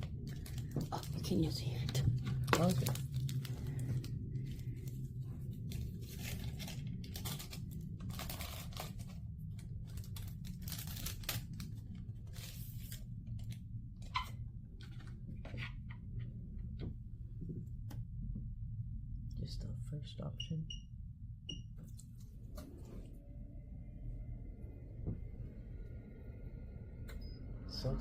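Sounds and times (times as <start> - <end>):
plastic packet tearing and crinkling: 0.0 - 5.0, 5.6 - 13.4
steady low hum: 0.0 - 28.0.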